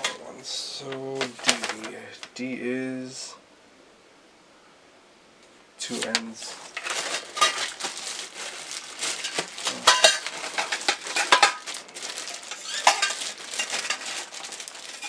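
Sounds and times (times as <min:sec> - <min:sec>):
metal and plastic parts clattering: 0:01.2 - 0:01.9, 0:06.0 - 0:15.0.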